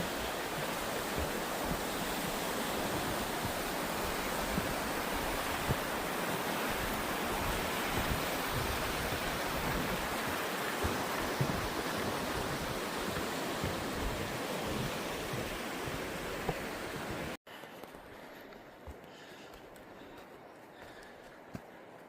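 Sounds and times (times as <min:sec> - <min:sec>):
flowing river water: 0:00.0 - 0:17.4
soft low thumps: 0:00.5 - 0:06.0, 0:06.8 - 0:17.1.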